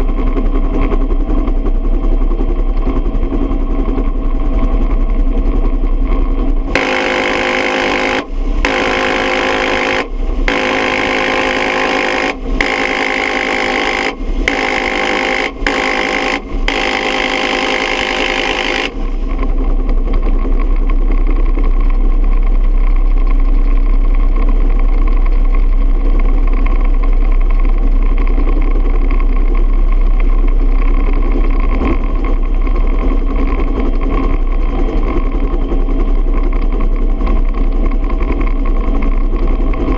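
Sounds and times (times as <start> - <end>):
helicopter turbine and rotor noise: 0.0 - 39.9
minigun firing buzzing bursts: 6.7 - 19.3.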